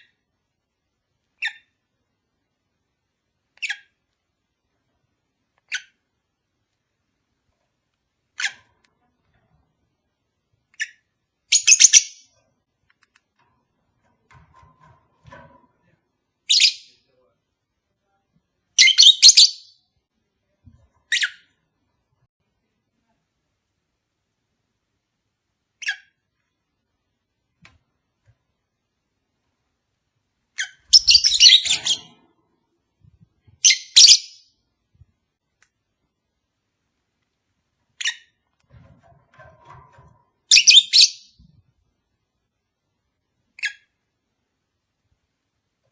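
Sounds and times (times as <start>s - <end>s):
lovebird shrill chirps: 30.6s - 32.0s, 33.6s - 34.5s, 40.5s - 41.4s
lovebirds chirping shrilly: 30.6s - 32.0s.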